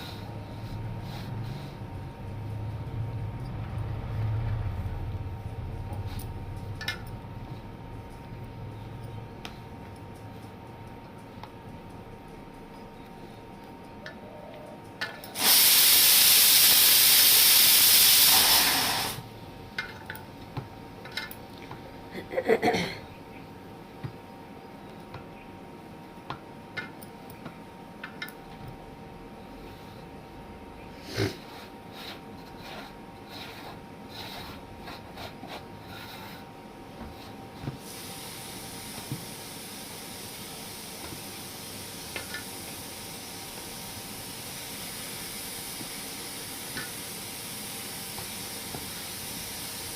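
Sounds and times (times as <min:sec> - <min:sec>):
pressure cooker steam hiss: 0:15.3 - 0:19.3, 0:37.8 - 0:49.9.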